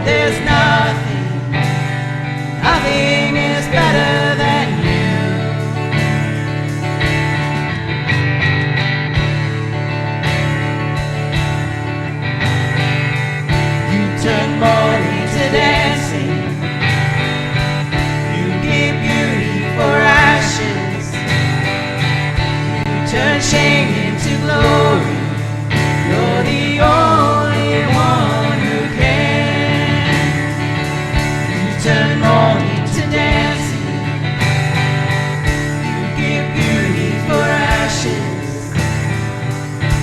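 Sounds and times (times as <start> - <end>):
person singing: 0.0 - 6.3, 13.6 - 21.8, 22.4 - 35.0, 35.6 - 39.2
guitar: 0.0 - 40.0
worship band playing: 0.0 - 40.0.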